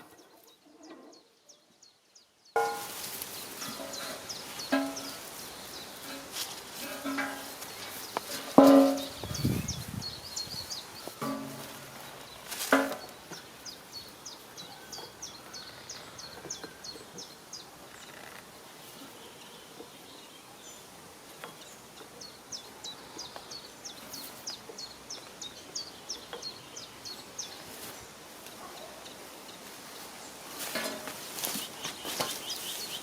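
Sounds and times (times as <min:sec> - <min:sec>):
sharp knock: 0:08.6 - 0:09.2.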